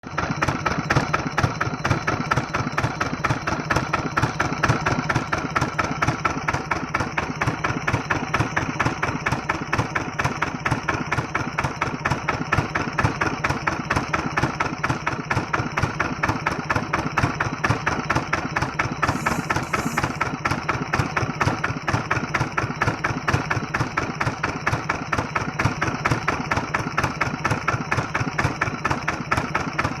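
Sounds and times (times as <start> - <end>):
diesel engine idling: 19.0 - 20.3.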